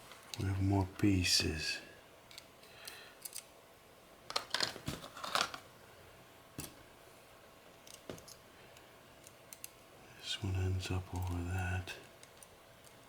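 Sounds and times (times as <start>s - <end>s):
plastic parts clicking: 4.3s - 5.6s.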